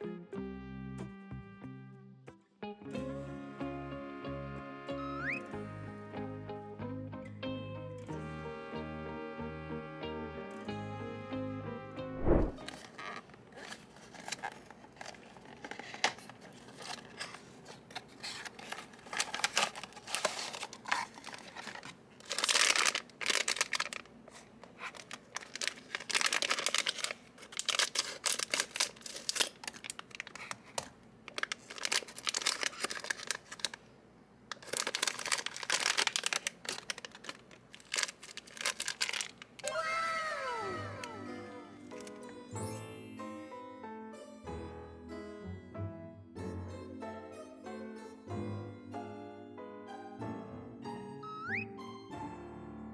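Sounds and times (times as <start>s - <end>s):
plastic packaging crinkling: 12.6s - 33.8s, 34.5s - 39.7s, 41.9s - 42.1s.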